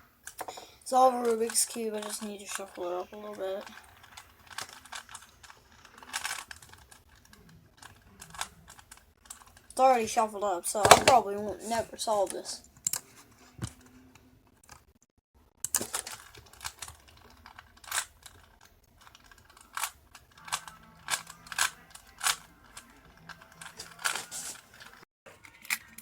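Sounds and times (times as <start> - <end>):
puzzle cube twisting clicks: 3.6 - 9.7, 15.7 - 26.0.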